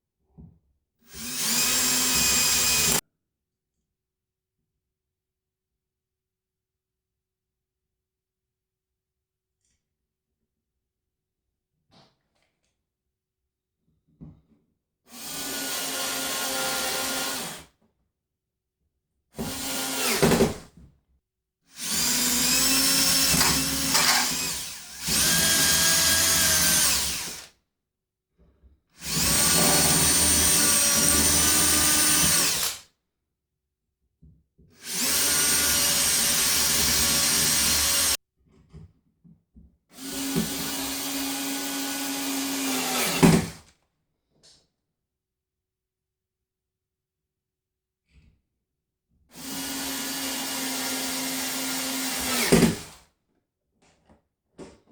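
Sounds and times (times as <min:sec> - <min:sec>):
power drill running: 0:01.1 - 0:03.0, 0:15.2 - 0:17.6, 0:19.4 - 0:20.4, 0:21.8 - 0:27.5, 0:29.0 - 0:32.8, 0:34.8 - 0:38.2, 0:40.0 - 0:43.4, 0:49.4 - 0:53.0.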